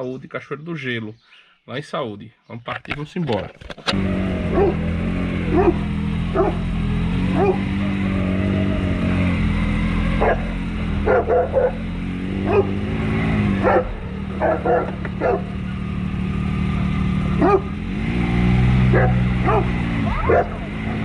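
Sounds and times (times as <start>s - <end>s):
vehicle engine idling: 3.9s - 21.0s
dog barking: 4.4s - 6.7s, 7.3s - 8.2s, 10.2s - 12.8s, 13.6s - 15.7s, 17.3s - 17.8s, 18.9s - 20.7s.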